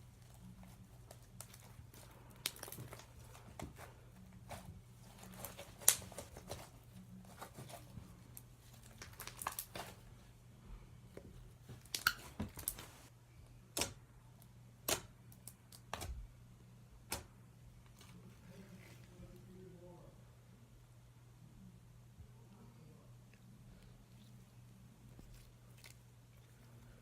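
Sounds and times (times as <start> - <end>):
slime squishing with sticky pops: 0.7 - 3.9, 11.7 - 12.8.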